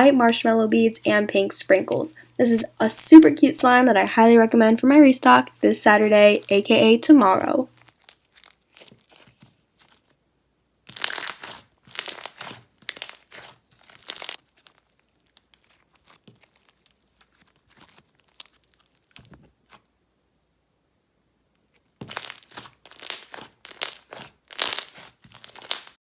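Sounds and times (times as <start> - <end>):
slime squishing and crackling: 7.4 - 10.1, 10.9 - 19.9, 21.8 - 26.0.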